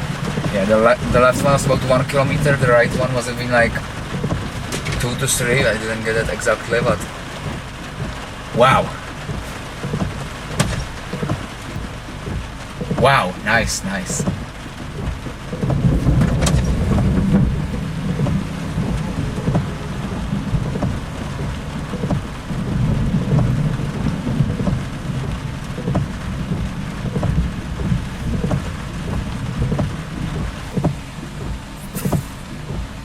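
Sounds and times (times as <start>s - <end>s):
heavy rain drumming on a car: 0.0s - 33.0s
sharp raindrop ticks: 0.0s - 33.0s
rolling thunder: 15.6s - 33.0s.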